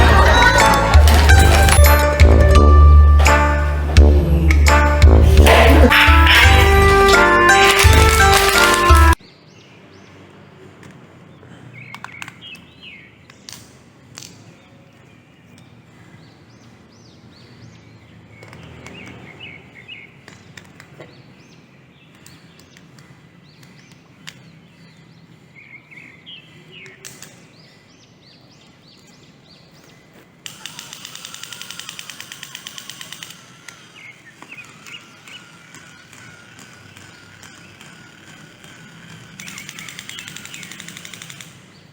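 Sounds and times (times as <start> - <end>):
outdoor background noise: 6.9 - 41.9
birds chirping: 8.3 - 13.5, 14.3 - 41.9
loud rapid rattle: 30.5 - 41.8.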